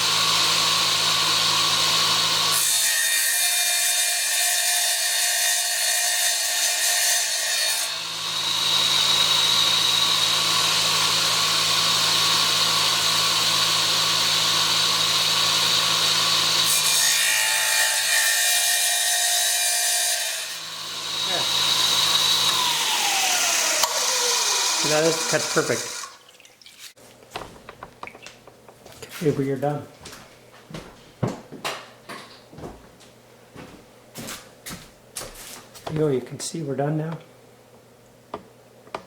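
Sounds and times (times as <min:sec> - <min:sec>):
tile saw cutting tile: 0:00.0 - 0:26.2.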